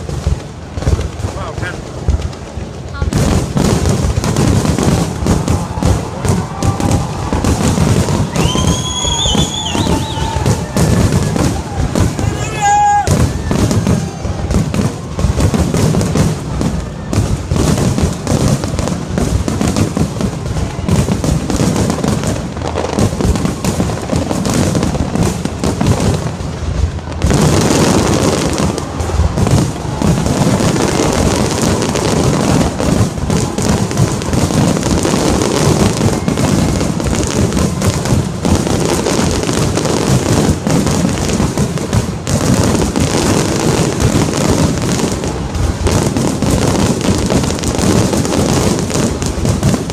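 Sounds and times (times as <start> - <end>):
fireworks bangs and crackles: 0.0 - 49.9.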